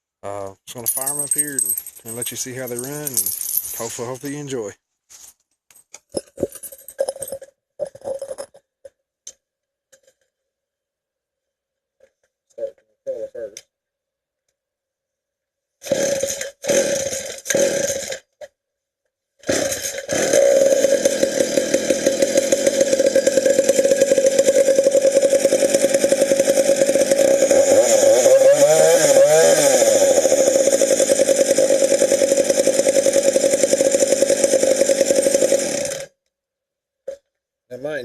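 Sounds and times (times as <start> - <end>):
chainsaw starting and running: 2.1 - 3.1, 15.8 - 18.4, 19.4 - 36.2.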